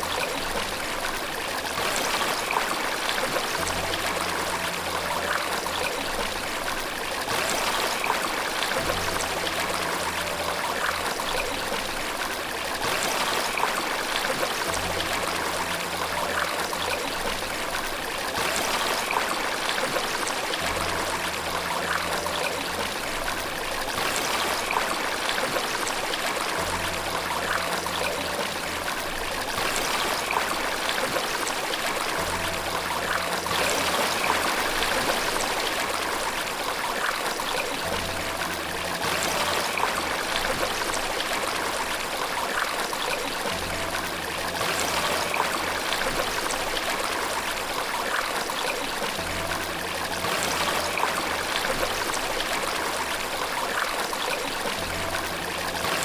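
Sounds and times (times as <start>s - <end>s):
running water: 0.0s - 56.0s.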